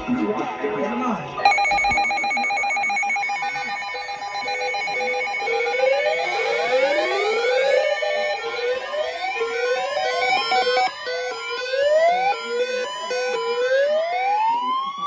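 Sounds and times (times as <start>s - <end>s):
warbling electronic alert tone: 1.5s - 11.4s
rising siren-like sweeps: 2.7s - 14.9s.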